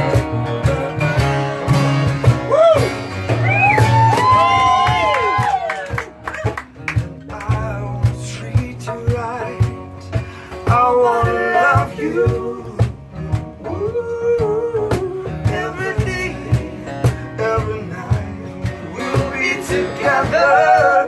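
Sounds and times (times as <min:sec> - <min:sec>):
person singing: 0:00.0 - 0:01.6, 0:06.4 - 0:21.0
guitar strummed: 0:00.0 - 0:21.0.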